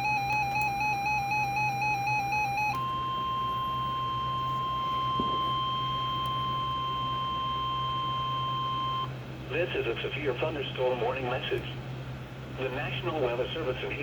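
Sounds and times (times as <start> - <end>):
steady loud alarm beep: 0.0 - 9.1.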